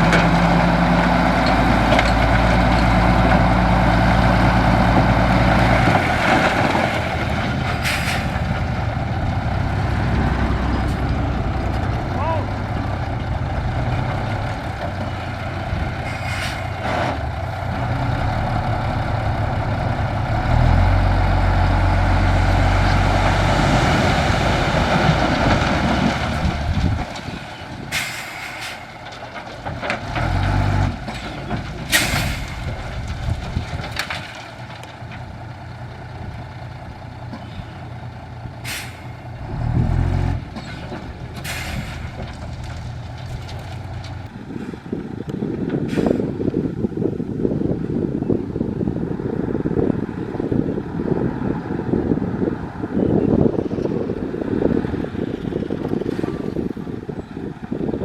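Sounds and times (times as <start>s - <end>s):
diesel truck engine running: 0.0s - 58.0s
air brake hissing: 7.8s - 8.3s, 38.6s - 39.1s, 41.4s - 42.0s.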